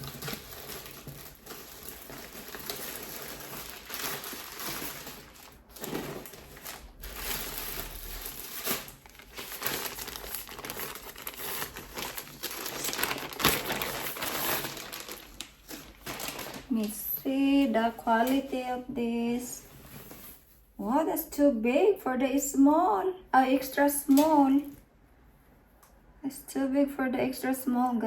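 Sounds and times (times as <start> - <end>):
plastic packaging crinkling: 0.0 - 17.2
sharp plastic crackle: 0.0 - 17.2.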